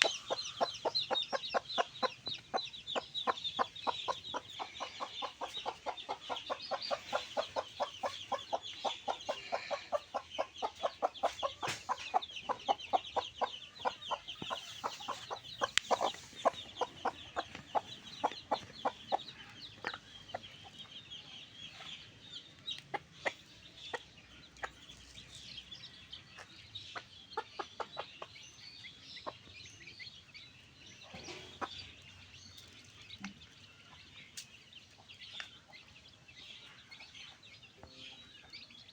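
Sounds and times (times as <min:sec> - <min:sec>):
high chirping: 0:00.0 - 0:22.2
chickens clucking: 0:00.0 - 0:38.9.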